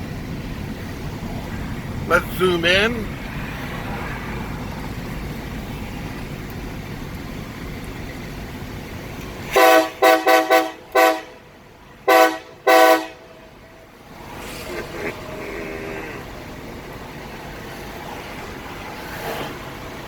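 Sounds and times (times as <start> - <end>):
low engine rumble: 0.0 - 20.0
train air horn blasts: 9.5 - 11.4, 12.1 - 13.3.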